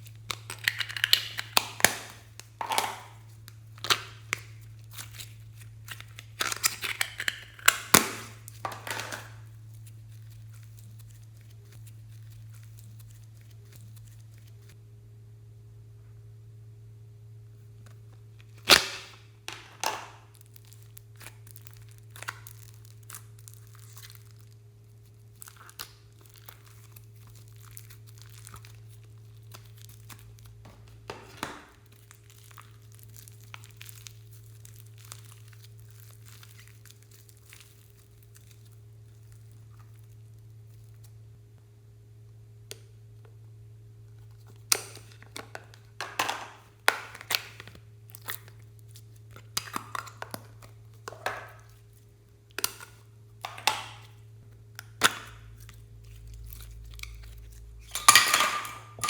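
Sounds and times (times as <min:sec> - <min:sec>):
steady low hum: 0:00.0 - 0:59.0
slime crackling: 0:18.6 - 0:41.1.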